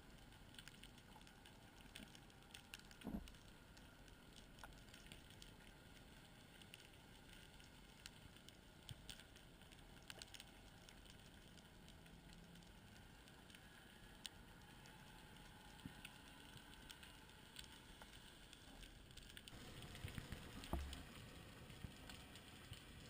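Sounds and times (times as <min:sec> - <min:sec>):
faint steady hiss: 0:00.0 - 0:23.0.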